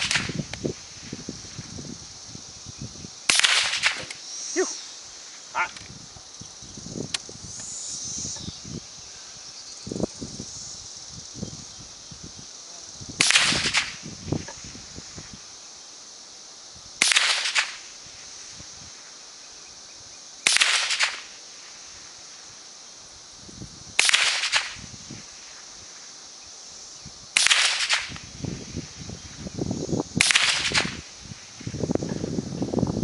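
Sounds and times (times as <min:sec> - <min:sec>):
rifle shots: 0:03.3 - 0:04.1, 0:13.2 - 0:14.0, 0:17.0 - 0:17.8, 0:20.5 - 0:21.2, 0:27.4 - 0:28.1, 0:30.2 - 0:31.0.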